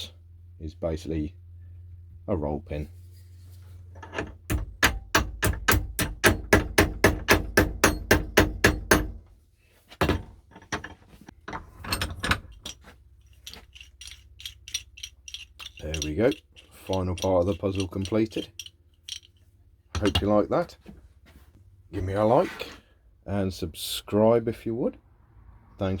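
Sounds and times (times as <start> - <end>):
hammer tapping metal pin: 4.1 - 9.2, 13.5 - 19.3, 20.0 - 20.3
light metallic clinks: 12.0 - 20.3.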